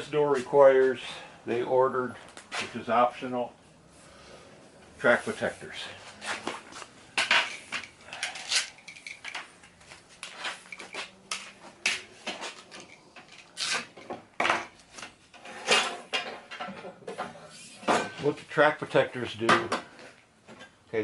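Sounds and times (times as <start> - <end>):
hard parts clinking and knocking: 7.1 - 18.4.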